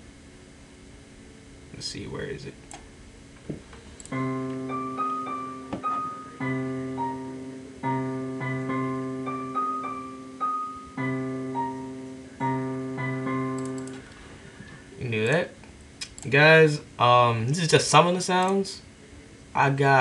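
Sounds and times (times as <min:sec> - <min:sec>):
higher piano melody: 0:04.1 - 0:14.1
piano playing held chords: 0:04.1 - 0:14.1.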